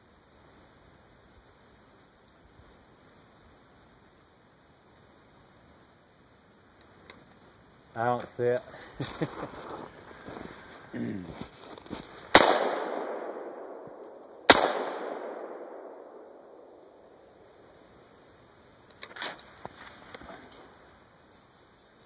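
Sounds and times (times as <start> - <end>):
rifle shots with echo: 12.3 - 17.2.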